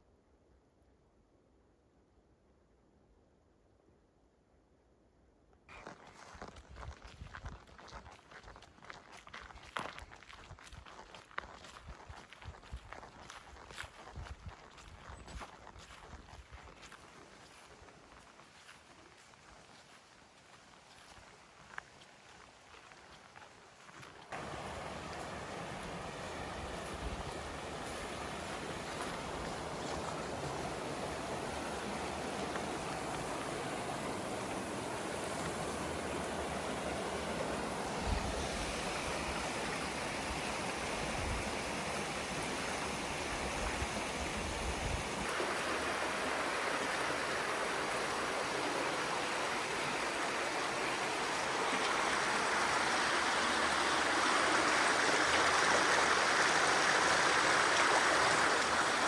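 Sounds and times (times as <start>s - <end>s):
stream water rushing: 24.0s - 59.0s.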